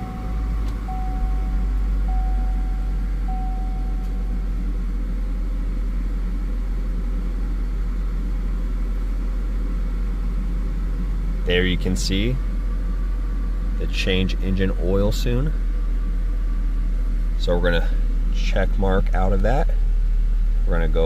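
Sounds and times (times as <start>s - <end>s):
dashboard warning chime: 0.0s - 4.6s
car engine idling: 0.0s - 21.0s.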